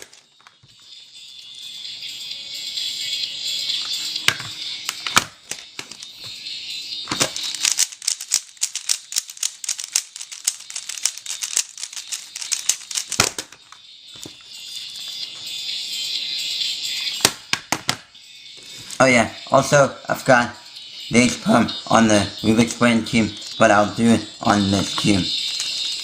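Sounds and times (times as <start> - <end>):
puzzle cube plastic clicks: 4.3 - 6.3, 7.1 - 14.4, 22.5 - 26.0.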